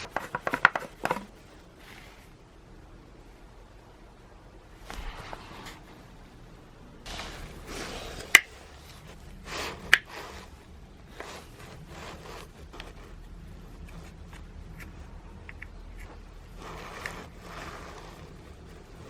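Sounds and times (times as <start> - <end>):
tools rubbing and scraping: 7.1 - 19.0.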